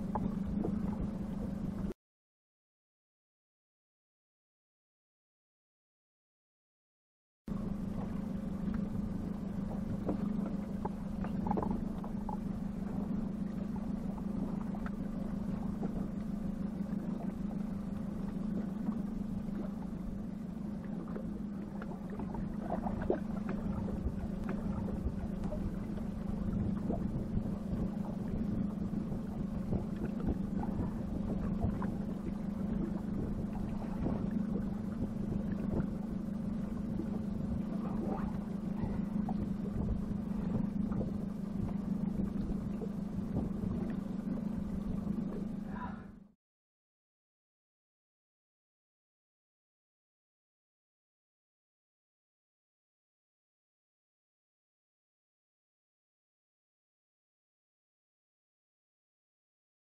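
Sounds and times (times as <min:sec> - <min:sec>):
outboard motor running: 0:00.0 - 0:01.9, 0:07.5 - 0:46.3.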